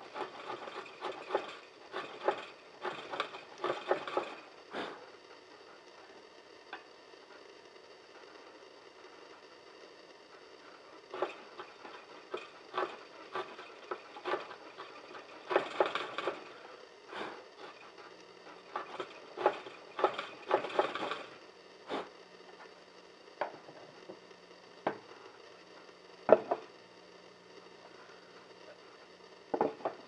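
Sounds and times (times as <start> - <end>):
rough strokes on wood: 0.0 - 5.1, 10.8 - 22.2.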